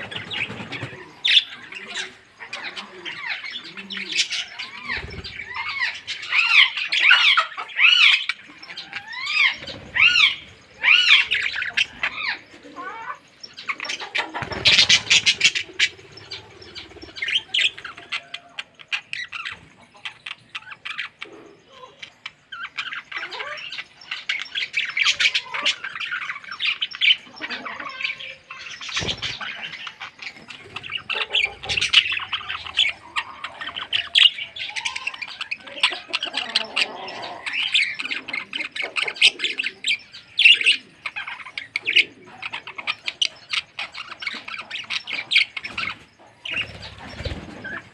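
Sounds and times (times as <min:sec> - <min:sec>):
birds chirping and squawking: 0:00.0 - 0:47.9.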